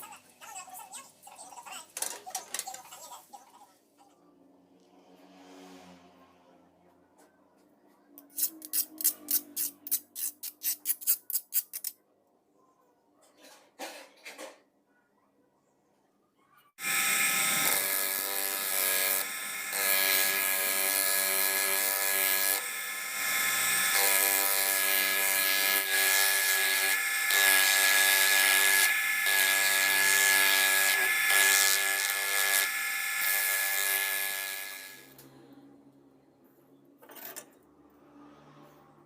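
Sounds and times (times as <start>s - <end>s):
electric grinder grinding steel: 16.8s - 35.2s.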